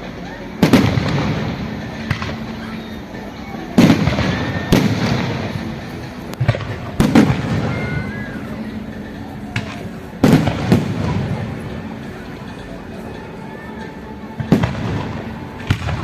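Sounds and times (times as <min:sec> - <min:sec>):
fireworks bangs: 0:00.0 - 0:12.7, 0:14.1 - 0:16.0
fireworks whistles: 0:00.0 - 0:12.7.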